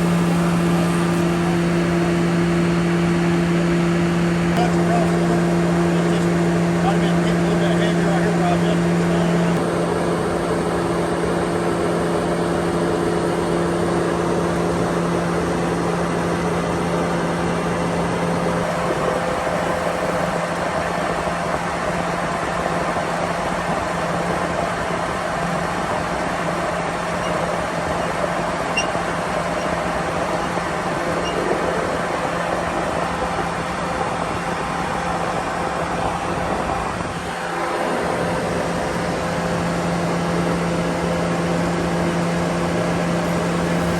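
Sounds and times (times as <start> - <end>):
motor hum: 0.0 - 43.9.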